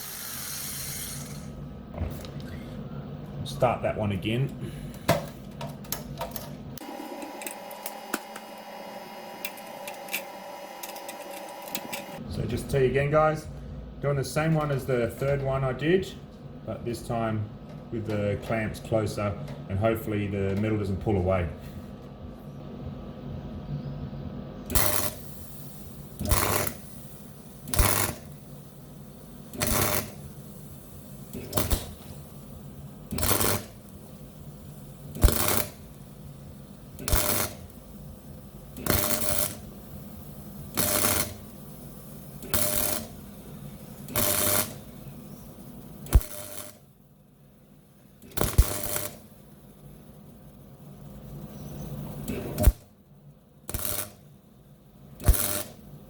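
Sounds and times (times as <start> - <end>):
welder arc crackling: 0.0 - 1.6, 24.7 - 46.9, 48.2 - 52.9, 53.6 - 54.3, 55.1 - 56.0
steady hum: 0.0 - 56.0.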